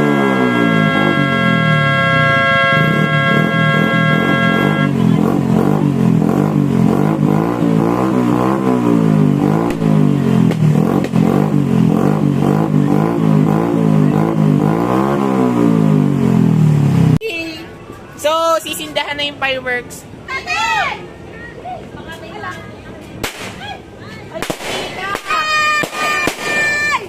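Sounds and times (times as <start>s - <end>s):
motorcycle engines revving: 0.0s - 17.2s.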